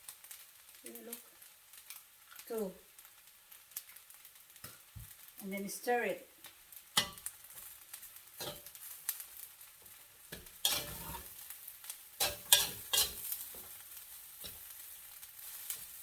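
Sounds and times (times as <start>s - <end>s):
faint frying sizzle: 0.0s - 16.0s
spatula scraping a pan: 7.0s - 7.7s, 8.4s - 9.0s, 9.8s - 11.5s, 12.2s - 16.0s.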